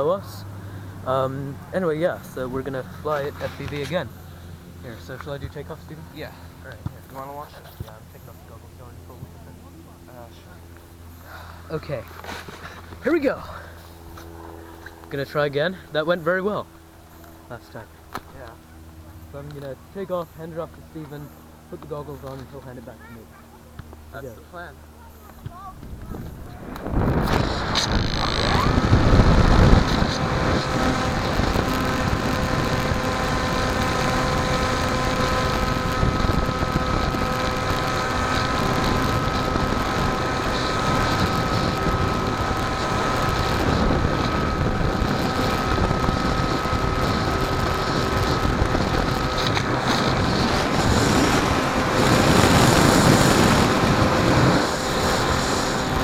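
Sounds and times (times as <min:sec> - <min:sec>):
electric motor and propeller whine: 0:00.0 - 0:56.0
wind rushing over microphone: 0:24.9 - 0:56.0.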